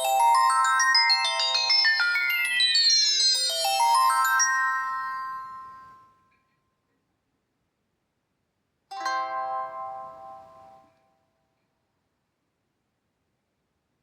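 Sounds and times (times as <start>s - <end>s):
chiming phone ringtone: 0.0s - 6.1s.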